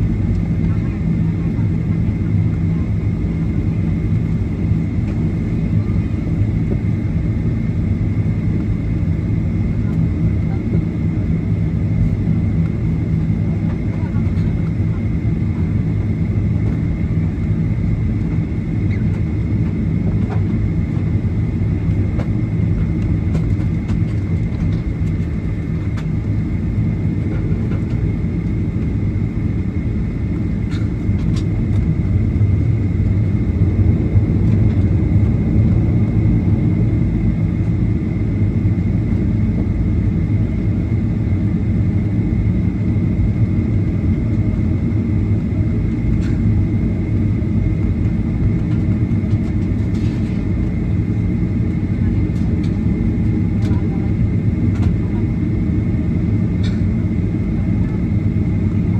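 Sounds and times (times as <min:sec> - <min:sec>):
airliner cabin engine rumble: 0:00.0 - 0:58.9.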